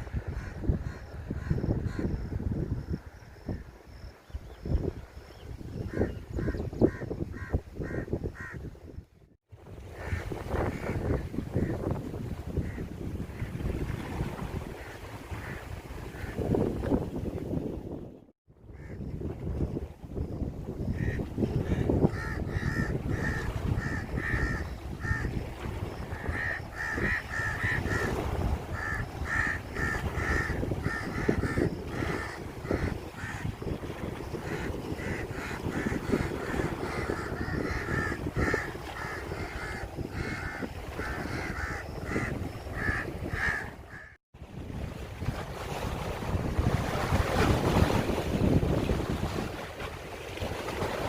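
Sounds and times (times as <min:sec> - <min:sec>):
wind rumble on microphone: 0:00.0 - 0:51.0.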